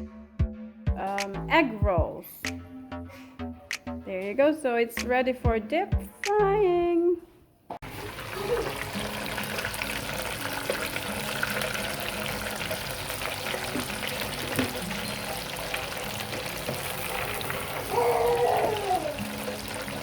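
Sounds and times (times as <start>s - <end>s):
deep-frying sizzle and crackle: 7.8s - 20.0s.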